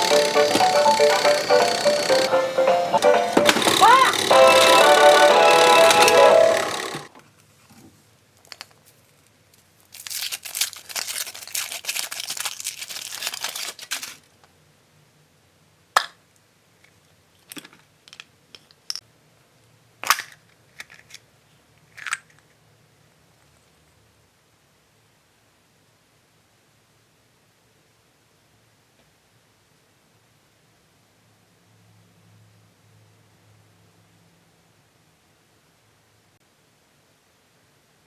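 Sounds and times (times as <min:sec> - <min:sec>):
foil wrapper crinkling and tearing: 0:09.1 - 0:14.3.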